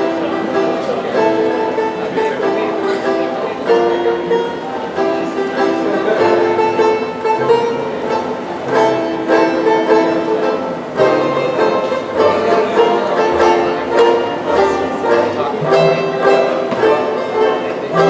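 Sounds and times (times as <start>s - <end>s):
melody of held notes: 0.0s - 18.0s.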